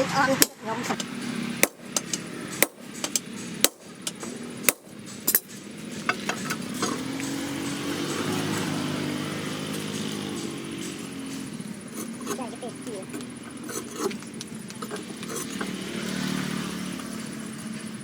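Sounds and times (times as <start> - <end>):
motor running: 0.0 - 18.0
hammer on steel: 0.4 - 14.2.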